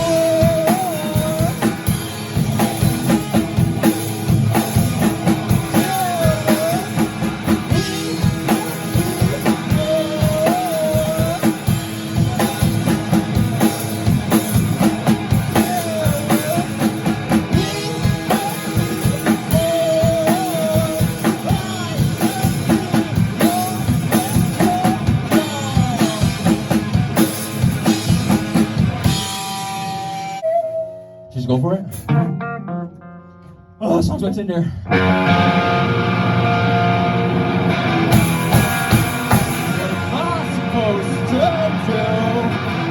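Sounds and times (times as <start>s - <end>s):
person singing: 0.0s - 3.4s, 4.8s - 27.5s, 28.9s - 31.3s, 38.1s - 42.9s
drum kit beat: 0.0s - 30.4s, 35.0s - 42.9s
guitar: 0.0s - 42.9s.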